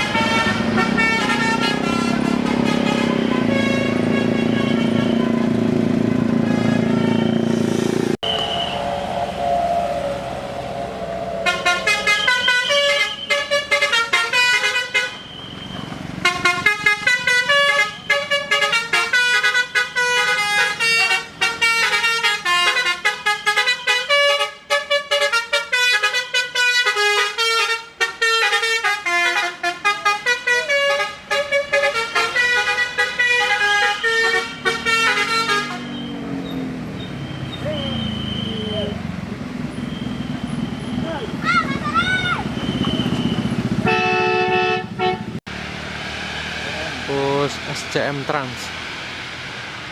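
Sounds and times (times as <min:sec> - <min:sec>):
multi-note air horn melody: 0:00.0 - 0:05.5, 0:06.4 - 0:07.5, 0:08.2 - 0:15.2, 0:16.2 - 0:35.9, 0:43.9 - 0:45.4
low engine rumble: 0:08.0 - 0:13.8.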